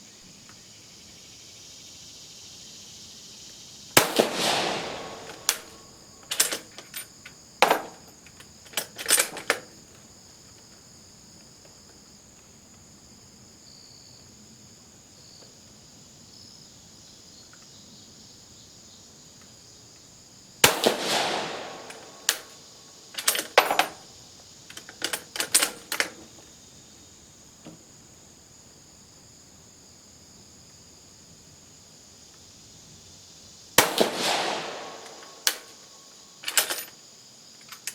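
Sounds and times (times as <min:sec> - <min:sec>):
rifle shot echoing: 0:04.0 - 0:06.7, 0:20.6 - 0:22.7, 0:33.8 - 0:35.8.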